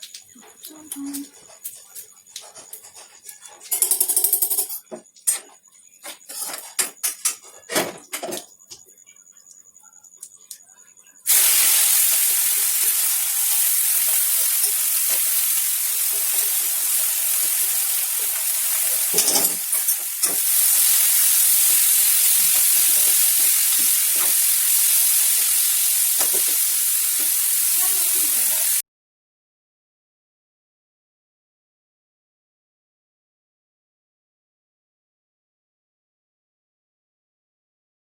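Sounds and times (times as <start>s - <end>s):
spatula scraping a pan: 6.1s - 6.8s, 11.3s - 28.8s
food sizzling in a pan: 11.3s - 28.8s.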